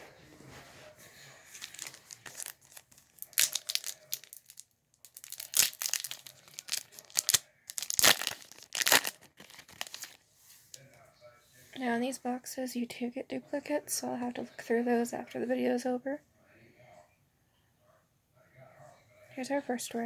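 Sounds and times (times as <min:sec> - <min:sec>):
wrapper tearing and crinkling: 0:01.5 - 0:10.2.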